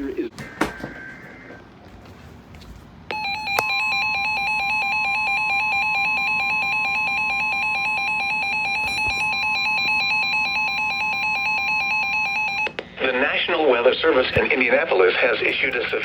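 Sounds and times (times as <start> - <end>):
fast-warbling electronic alarm: 3.1 - 12.7.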